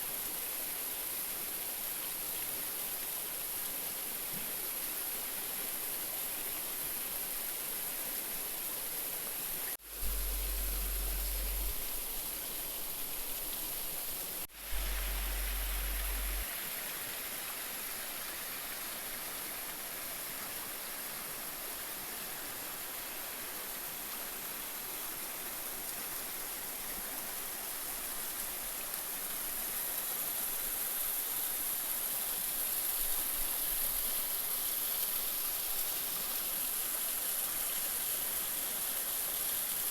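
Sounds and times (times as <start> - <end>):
river water rushing: 9.4 - 31.2.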